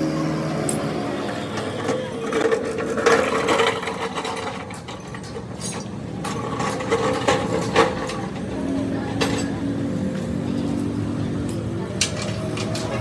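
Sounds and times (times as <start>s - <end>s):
machine hum: 0.0s - 4.5s
metal tools clanking: 0.0s - 13.0s.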